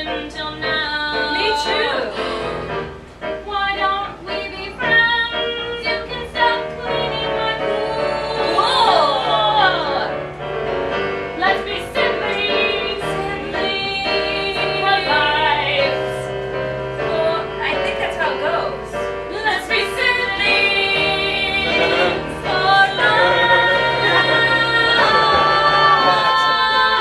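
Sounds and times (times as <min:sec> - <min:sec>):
instrumental music: 0:00.0 - 0:27.0
person singing: 0:20.4 - 0:27.0.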